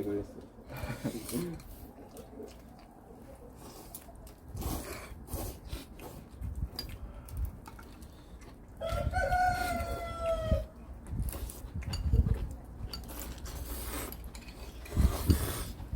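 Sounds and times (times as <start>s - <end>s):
rooster crowing: 8.8s - 10.7s.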